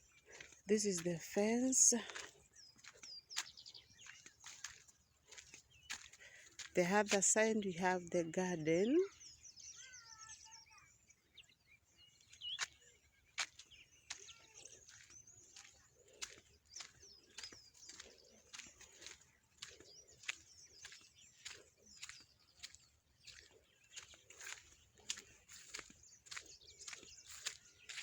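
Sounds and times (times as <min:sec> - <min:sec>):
faint birds chirping: 0:00.0 - 0:28.0.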